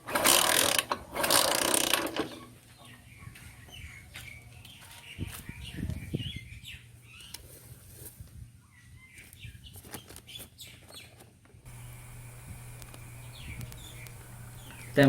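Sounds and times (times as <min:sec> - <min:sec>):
birds chirping: 0:02.2 - 0:07.4, 0:08.7 - 0:15.0
clicks: 0:11.7 - 0:15.0
steady low hum: 0:11.7 - 0:15.0.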